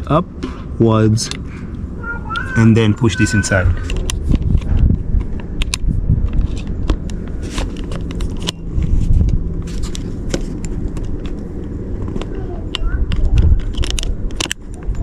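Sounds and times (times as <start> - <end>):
steady low rumble: 0.0 - 15.0
plastic housing clicks and scrapes: 3.7 - 15.0.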